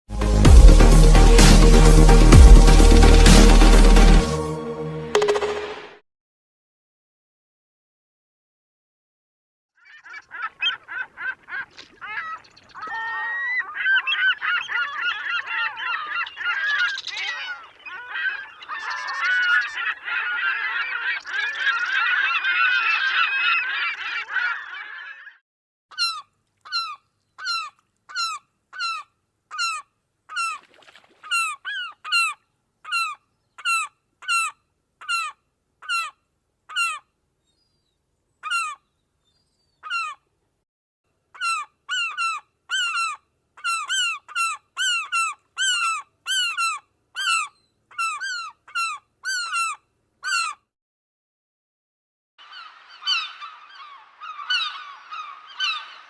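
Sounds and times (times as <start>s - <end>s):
gull calling: 9.8s - 37.0s, 52.4s - 56.0s
many gulls clamouring: 10.2s - 25.0s.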